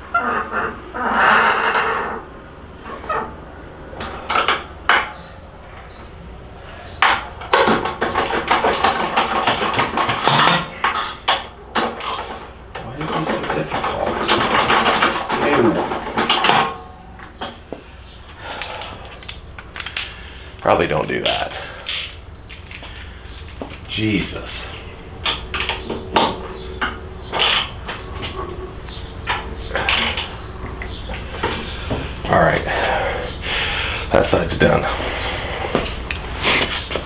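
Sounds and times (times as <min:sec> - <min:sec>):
metal tools clinking and clattering: 0:07.0 - 0:17.6, 0:18.3 - 0:33.0
metal scraping on metal: 0:07.5 - 0:17.6, 0:18.4 - 0:33.4.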